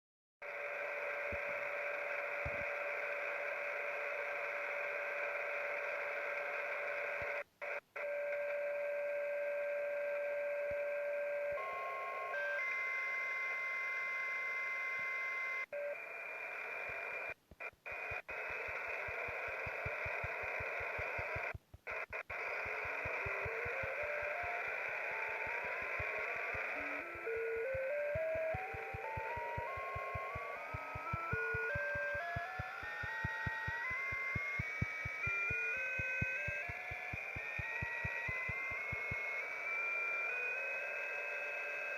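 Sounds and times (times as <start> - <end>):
electronic tones: 0.4 - 41.9
radio static hiss: 0.4 - 41.9
rapid low clicks: 16.9 - 39.3.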